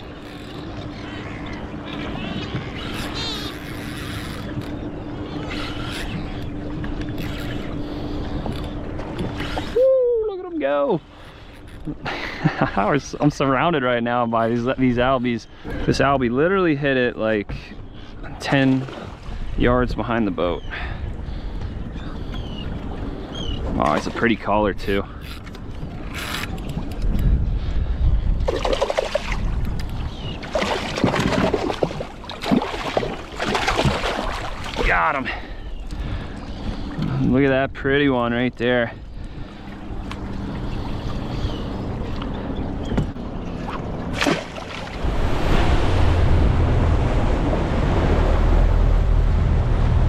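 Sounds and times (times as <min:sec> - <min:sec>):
water splashing against boat: 0:00.0 - 0:50.0
wind buffeting microphone: 0:19.1 - 0:44.2, 0:44.9 - 0:50.0.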